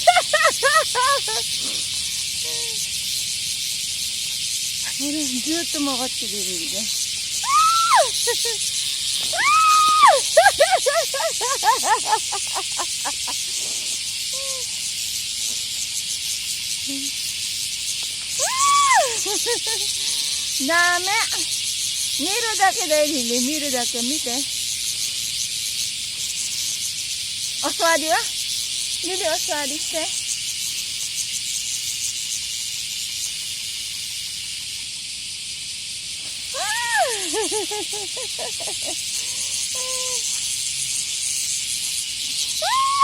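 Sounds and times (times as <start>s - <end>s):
cicadas droning: 0.0s - 43.0s
rapidly pulsing insect call: 0.0s - 43.0s.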